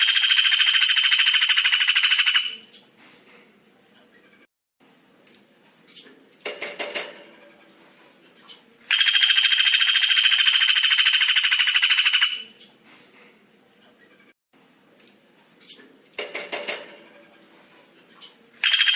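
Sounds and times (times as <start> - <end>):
songbird fast trill: 0.0 - 2.7, 8.9 - 12.6.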